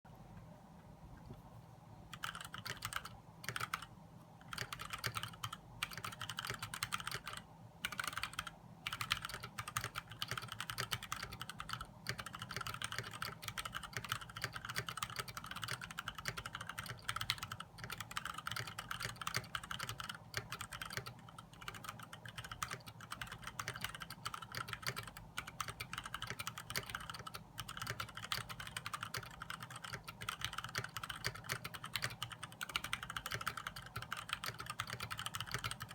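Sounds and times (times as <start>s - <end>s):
typing on mechanical keyboard: 2.1s - 35.9s.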